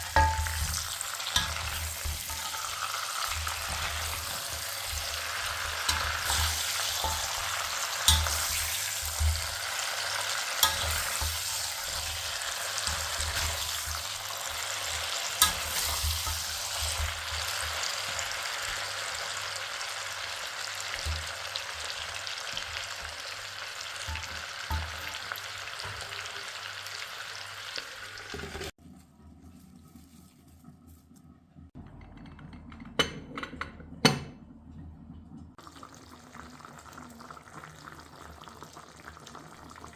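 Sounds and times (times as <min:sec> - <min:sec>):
meat sizzling in a pan: 0:00.0 - 0:28.8.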